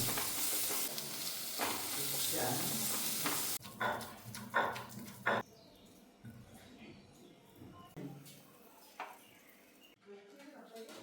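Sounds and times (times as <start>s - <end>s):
food sizzling in a pan: 0.0s - 3.7s.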